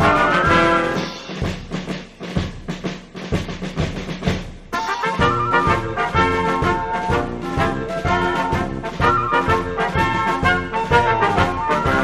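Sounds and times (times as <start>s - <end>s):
steady drum beat: 0.0s - 12.0s
sustained brass-like notes: 4.8s - 12.0s.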